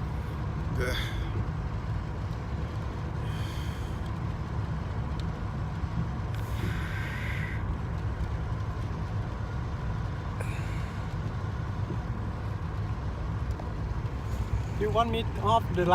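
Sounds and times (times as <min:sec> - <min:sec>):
car engine and tyres rumbling: 0:00.0 - 0:15.9.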